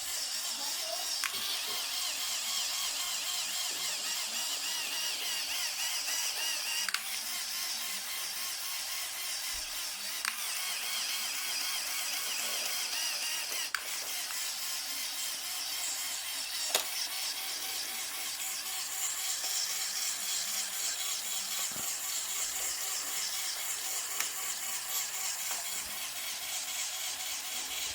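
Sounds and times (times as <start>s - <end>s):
motor whirring through plastic gears: 0.0s - 27.9s.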